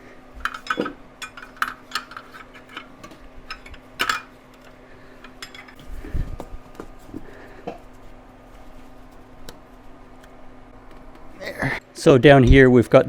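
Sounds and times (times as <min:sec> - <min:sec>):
metal tools clinking: 0:00.4 - 0:05.8.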